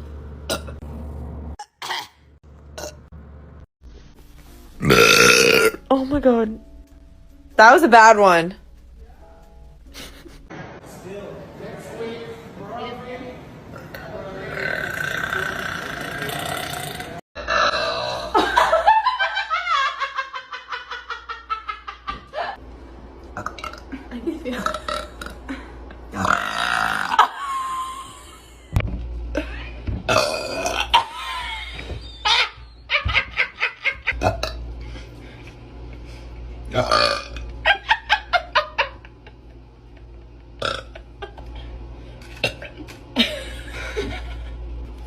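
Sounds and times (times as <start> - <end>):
woman burping: 4.8 - 5.8, 14.4 - 18.4, 23.4 - 23.9, 24.5 - 25.5, 26.1 - 27.4, 30.1 - 31.1, 34.1 - 34.6, 36.7 - 37.4, 40.6 - 41.0
woman giggling: 9.9 - 10.5, 22.1 - 22.6, 23.9 - 24.9, 27.2 - 28.7.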